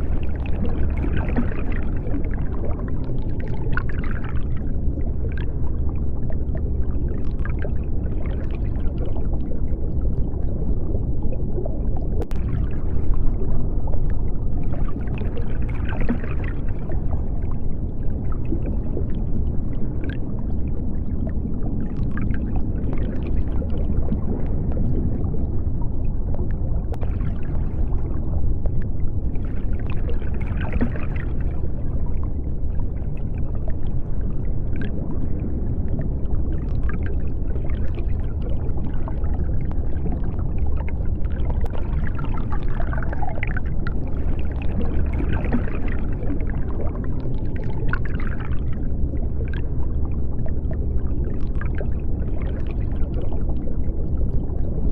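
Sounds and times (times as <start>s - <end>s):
deep underwater rumble: 0.0s - 54.9s
underwater bubbling: 0.0s - 54.9s.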